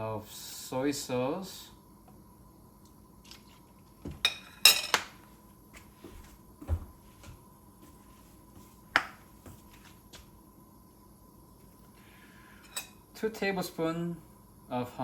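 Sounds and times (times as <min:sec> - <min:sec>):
metal spoon clinking on dishes: 0:04.3 - 0:05.0, 0:12.6 - 0:13.0.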